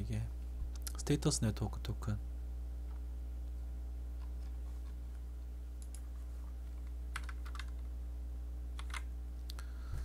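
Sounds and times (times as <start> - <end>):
steady low hum: 0.0 - 10.0
keyboard typing: 5.8 - 7.9, 8.8 - 9.1.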